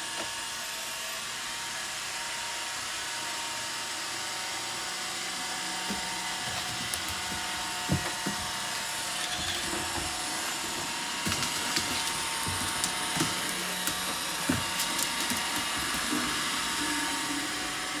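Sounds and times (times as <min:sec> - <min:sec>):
robot vacuum whirring: 0:05.6 - 0:18.0.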